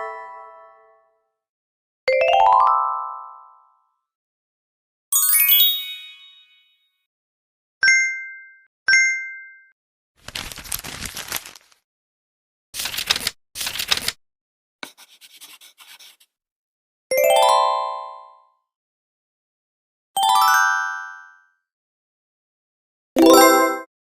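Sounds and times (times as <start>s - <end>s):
bright bell-like dings: 5.2s - 7.0s.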